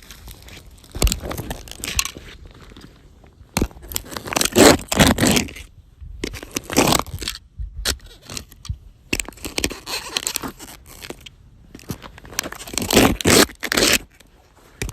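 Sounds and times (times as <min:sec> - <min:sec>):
boot crunching toy car on asphalt: 0:00.0 - 0:02.5, 0:03.6 - 0:05.6, 0:06.2 - 0:14.9.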